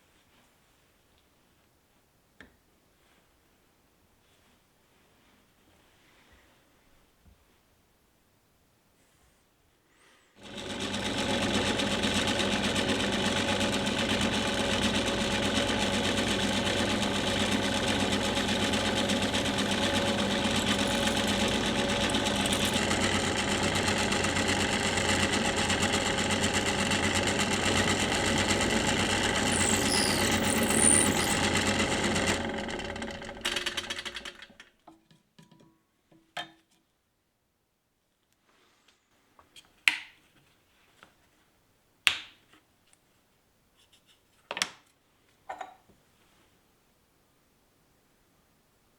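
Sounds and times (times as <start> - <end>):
electric power tool motor running: 10.4 - 34.3.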